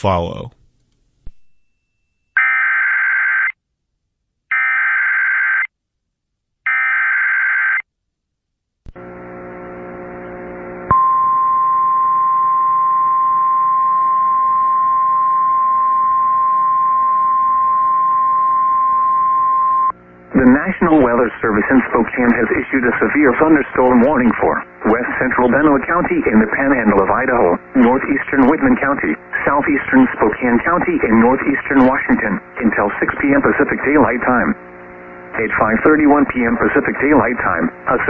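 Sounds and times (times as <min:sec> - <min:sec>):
buzzy hum: 0:08.9 - 0:38.0.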